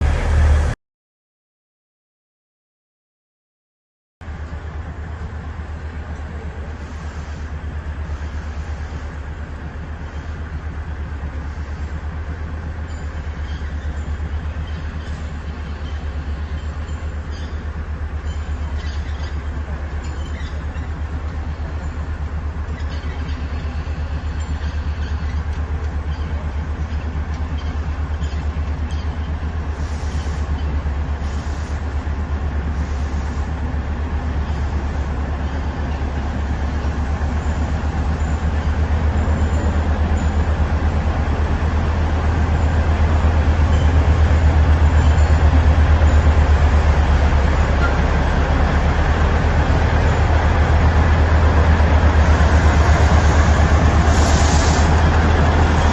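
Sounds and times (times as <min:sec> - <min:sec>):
train running rumble: 0:00.0 - 0:00.8, 0:04.2 - 0:55.9
hiss: 0:29.7 - 0:30.6, 0:53.9 - 0:55.1.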